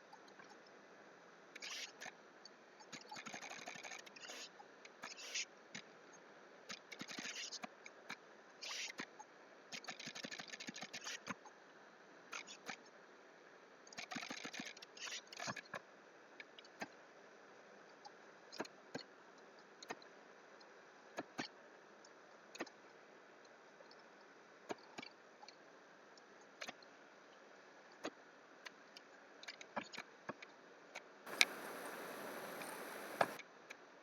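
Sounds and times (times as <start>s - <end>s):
computer mouse clicks: 3.1s - 4.4s, 14.0s - 15.2s, 31.3s - 33.4s
low room hiss: 30.1s - 34.0s.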